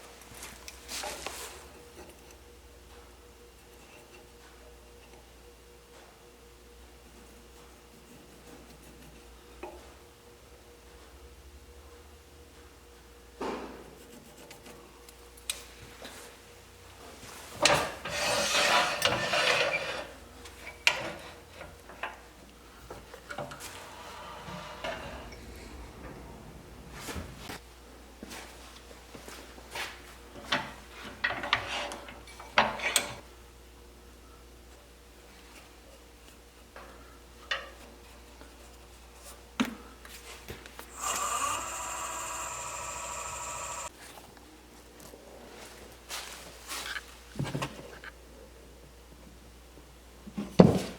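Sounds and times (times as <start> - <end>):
hand tool scraping wood: 17.6 - 20.2, 23.1 - 26.0
power tool motor running: 40.9 - 43.9.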